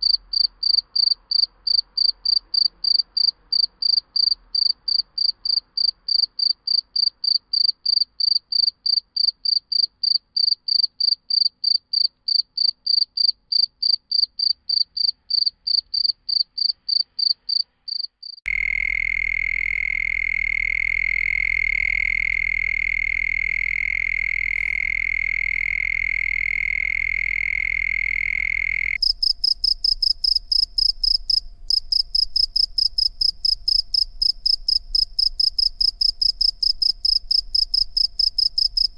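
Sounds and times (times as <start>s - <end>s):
cricket continuous trill: 0.0s - 38.9s
crickets chirping in pulses: 14.7s - 38.9s.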